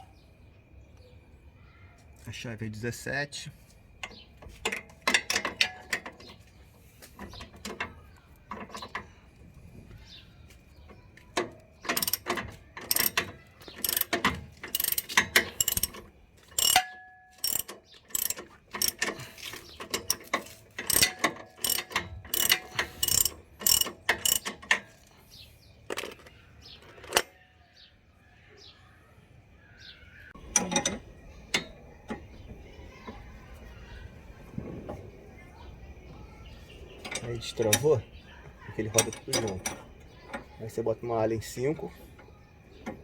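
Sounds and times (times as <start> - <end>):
ratchet wrench clicking: 11.4 - 25.1.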